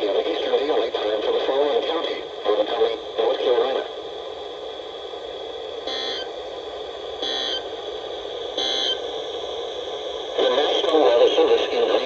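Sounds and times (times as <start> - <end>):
radio hiss: 0.0 - 12.0
screeching digital data tones: 5.9 - 6.3, 7.2 - 7.7, 8.6 - 9.0.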